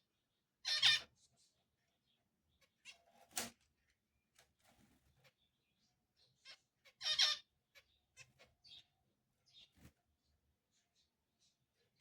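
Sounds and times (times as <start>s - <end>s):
faint bird chirps: 5.2s - 12.0s.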